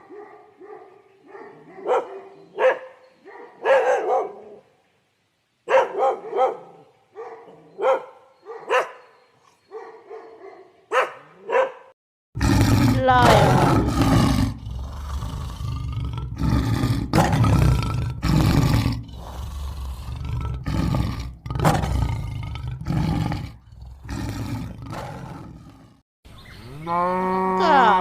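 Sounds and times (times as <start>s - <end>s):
lion roaring: 12.4s - 26.0s.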